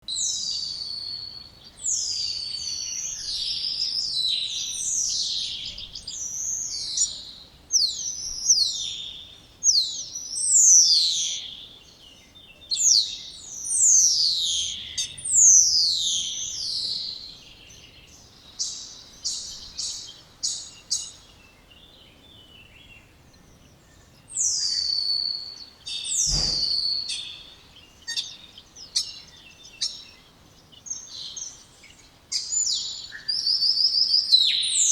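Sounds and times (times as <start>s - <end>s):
low thump: 26.3s - 26.8s.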